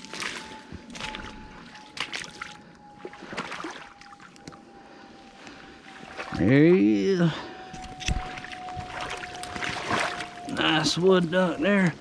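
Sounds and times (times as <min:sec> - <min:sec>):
footsteps wading through water: 0:00.0 - 0:04.5, 0:05.2 - 0:06.4, 0:07.8 - 0:11.2.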